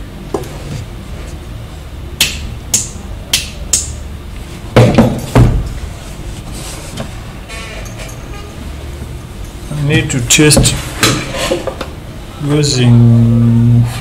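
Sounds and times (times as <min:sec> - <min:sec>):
steady low hum: 0:00.0 - 0:14.0
heavy knocks on workbench: 0:04.8 - 0:05.7.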